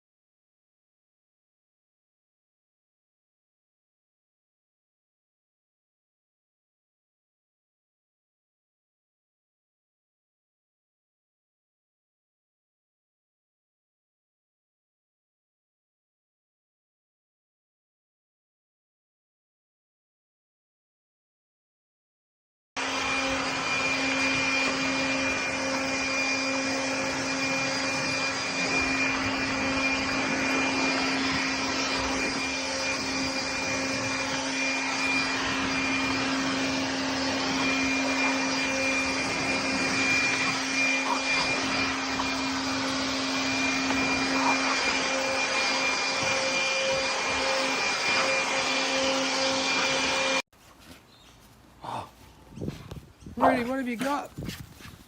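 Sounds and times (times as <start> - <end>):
electric appliance motor running: 22.8 - 50.4.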